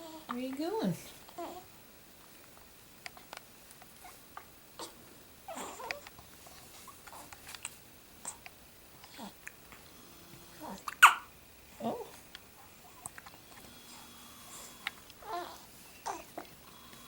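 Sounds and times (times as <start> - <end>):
baby squeaking and grunting: 5.5 - 6.0, 10.6 - 11.3, 15.2 - 16.4.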